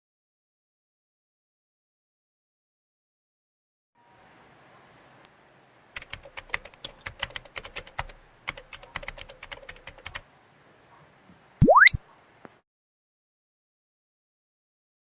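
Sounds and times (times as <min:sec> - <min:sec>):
rapid typing on keyboard: 0:06.0 - 0:10.2
rising whistle sound effect: 0:11.6 - 0:12.0.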